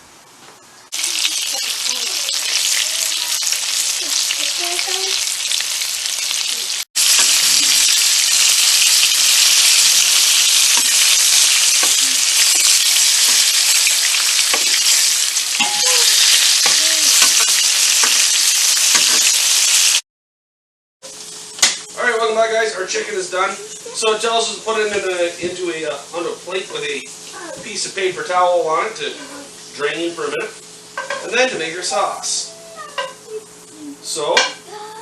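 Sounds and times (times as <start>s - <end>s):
chicken frying in hot oil: 0.9s - 20.0s.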